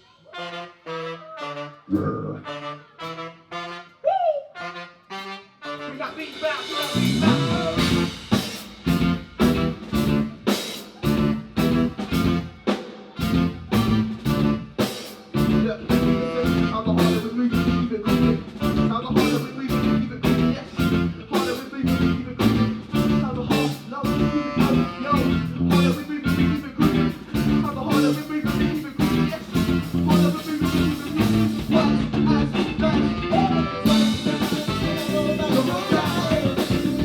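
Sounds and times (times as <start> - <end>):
guitar: 1.3 - 37.0
drum kit beat: 5.9 - 37.0
low bass line: 7.0 - 8.3, 11.0 - 12.5, 13.2 - 14.8, 15.4 - 21.3, 21.9 - 37.0.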